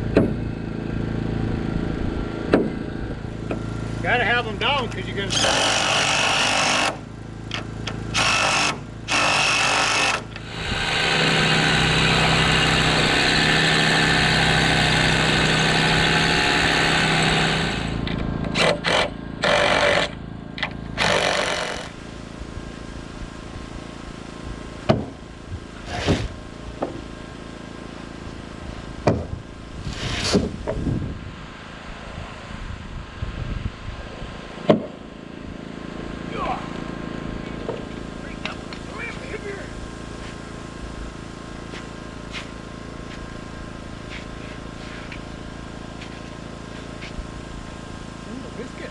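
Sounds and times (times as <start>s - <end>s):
power tool running: 0.0s - 30.6s
sharp knocks: 24.9s - 25.2s, 29.0s - 29.3s.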